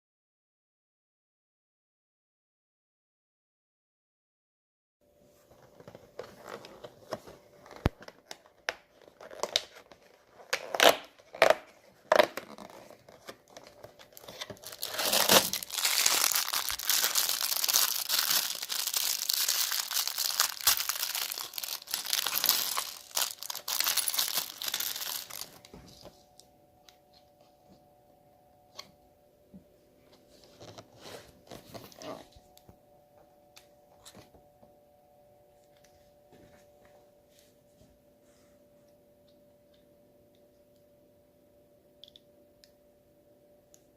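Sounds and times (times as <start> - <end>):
packaging tearing and crinkling: 6.2 - 25.7
packaging clicks: 12.2 - 25.7.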